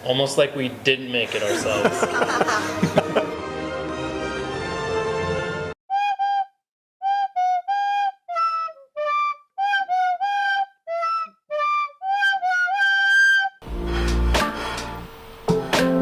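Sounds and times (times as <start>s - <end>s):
solo flute-like melody: 5.9s - 13.6s.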